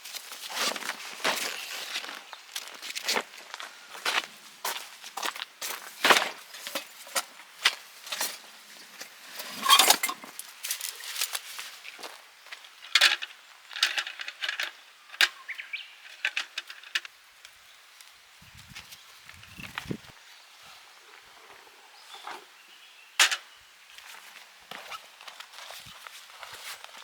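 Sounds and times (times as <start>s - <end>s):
camping gear clinking and knocking: 5.6s - 15.4s.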